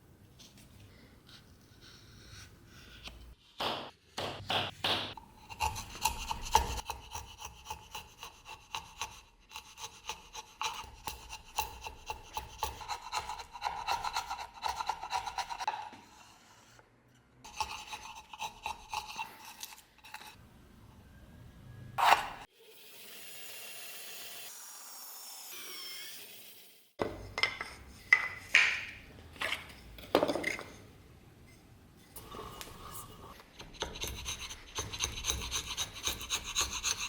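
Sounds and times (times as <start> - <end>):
hand tool scraping: 32.1 - 37.0.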